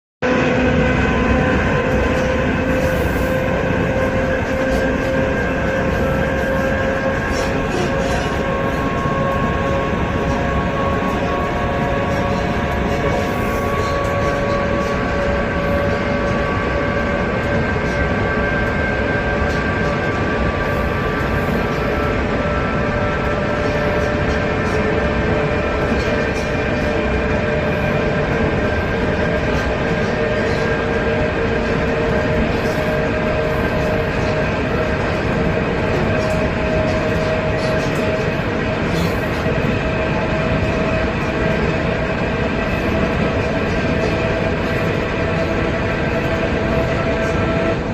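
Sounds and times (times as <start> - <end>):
electric train running with whine: 0.2 - 47.9.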